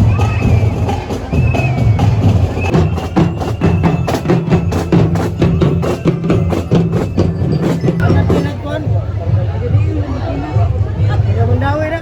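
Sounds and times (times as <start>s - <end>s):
fast knocking drumbeat: 0.0s - 8.9s.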